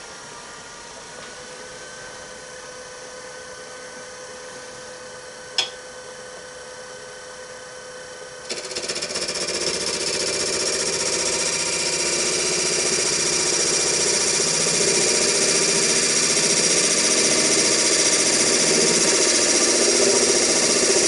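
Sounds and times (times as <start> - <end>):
wood lathe motor whine: 7.0 - 21.0
turning tool cutting wood: 8.5 - 21.0.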